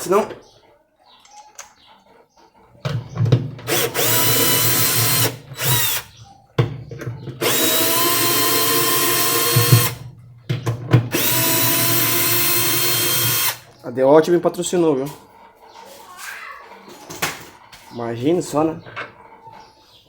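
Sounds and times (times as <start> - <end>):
impact driver whining: 2.9 - 6.2, 7.3 - 10.0, 10.8 - 13.6.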